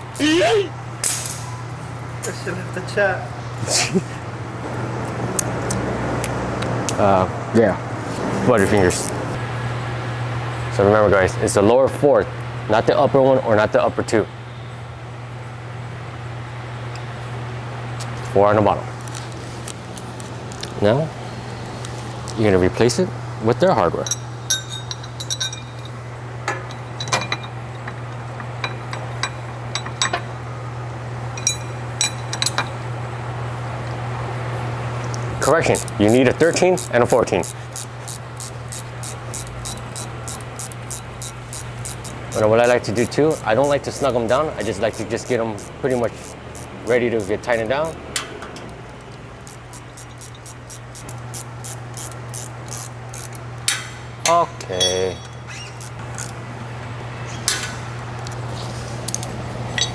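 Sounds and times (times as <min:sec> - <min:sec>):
steady low hum: 0:00.0 - 0:59.9
metal hardware clinking: 0:01.0 - 0:02.5, 0:21.8 - 0:22.9, 0:23.5 - 0:30.4, 0:31.3 - 0:32.9, 0:35.0 - 0:56.4, 0:57.3 - 0:58.4, 0:59.0 - 0:59.9
ratchet wrench clicking: 0:08.7 - 0:09.2, 0:35.0 - 0:48.2, 0:49.4 - 0:53.8, 0:55.5 - 0:56.4.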